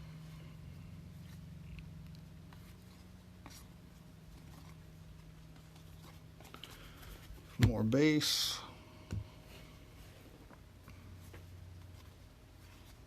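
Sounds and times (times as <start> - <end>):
low hum: 0.0 - 13.0
cards rustling: 2.4 - 7.9.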